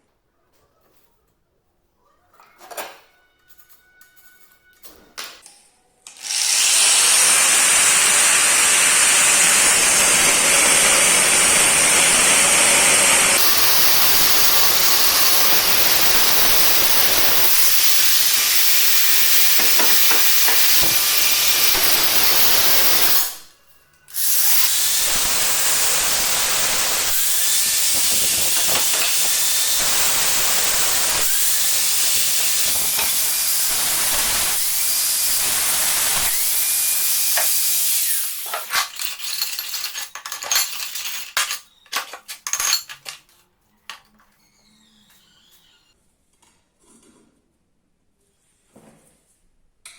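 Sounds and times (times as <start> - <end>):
power tool grinding metal: 6.1 - 23.5, 24.1 - 41.4.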